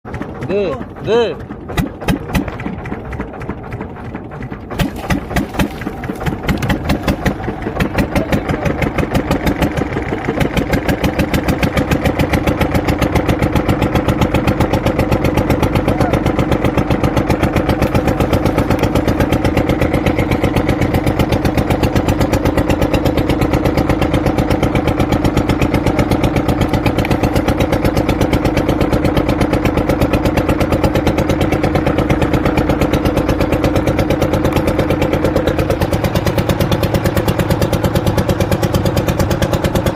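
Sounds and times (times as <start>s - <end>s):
boat engine puttering: 0.0s - 39.9s.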